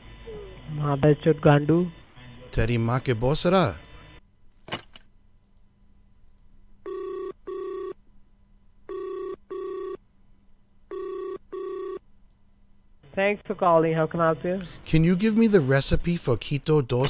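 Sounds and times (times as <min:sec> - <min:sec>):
telephone ringback tone: 0:06.8 - 0:08.0, 0:08.9 - 0:10.0, 0:10.9 - 0:12.0.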